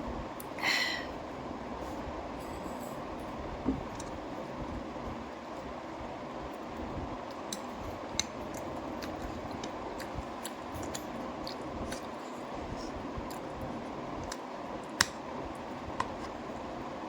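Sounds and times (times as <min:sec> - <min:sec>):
chewing mouth sounds: 0:07.4 - 0:15.1.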